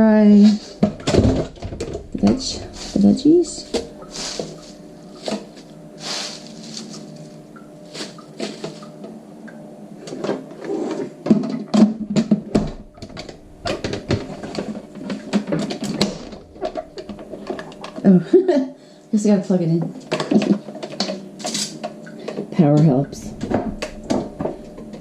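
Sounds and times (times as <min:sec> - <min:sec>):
steady low hum: 0:00.0 - 0:25.0
plastic containers clattering: 0:00.4 - 0:07.1, 0:11.3 - 0:18.1, 0:20.1 - 0:25.0.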